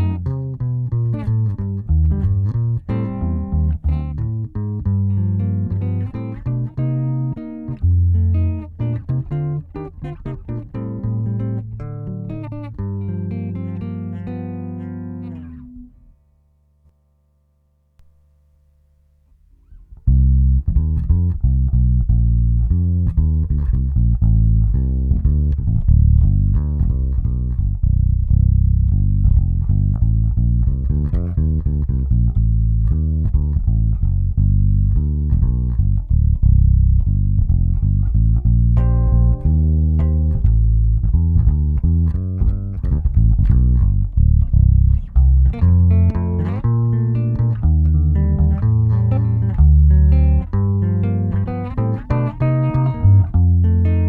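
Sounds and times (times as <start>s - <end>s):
electric bass guitar plucking: 0.0s - 16.2s, 19.5s - 54.0s.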